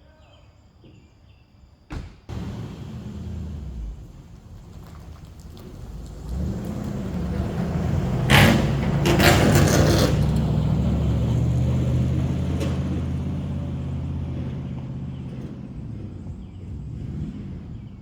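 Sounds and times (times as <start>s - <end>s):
loud rushing burst: 2.3s - 5.8s
vehicle engine running: 2.3s - 18.0s.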